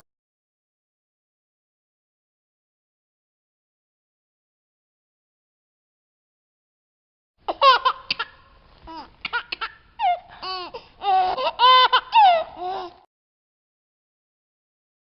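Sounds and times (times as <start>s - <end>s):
high-pitched giggling laughter: 9.3s - 13.0s.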